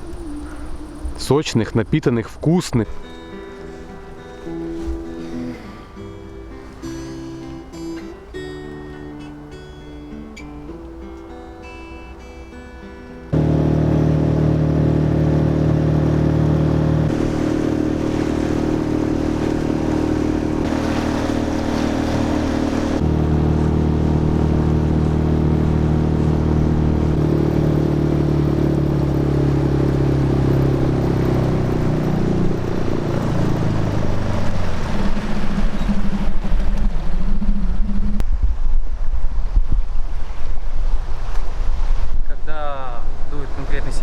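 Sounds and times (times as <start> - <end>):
engine running: 13.3 - 38.8.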